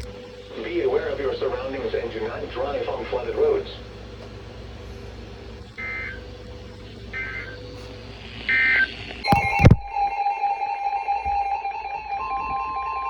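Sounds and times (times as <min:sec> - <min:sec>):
digital data bursts: 0:00.0 - 0:13.0
steady electronic tone: 0:00.0 - 0:13.0
loud click: 0:09.1 - 0:09.9.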